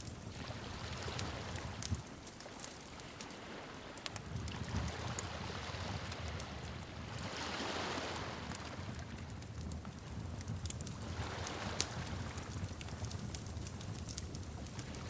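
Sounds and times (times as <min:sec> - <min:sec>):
wood fire crackling: 0:00.0 - 0:15.0
hissing flame: 0:04.0 - 0:15.0.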